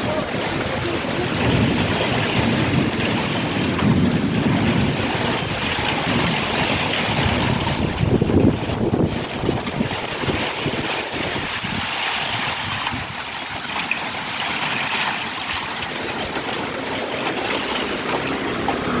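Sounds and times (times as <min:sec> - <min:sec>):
strong wind blowing: 0:00.0 - 0:13.9
wind buffeting microphone: 0:00.0 - 0:19.0.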